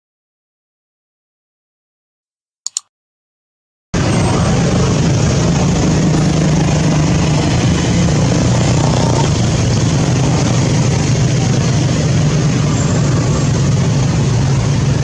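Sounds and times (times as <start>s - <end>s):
short clicks: 2.7s - 2.9s
engine humming loudly: 4.0s - 15.0s.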